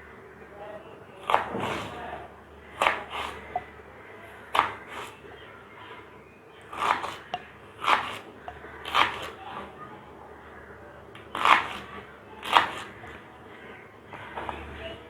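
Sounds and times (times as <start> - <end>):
knife cutting plantain: 1.3 - 2.0, 2.8 - 3.7, 4.5 - 5.2, 6.7 - 9.4, 11.3 - 13.0.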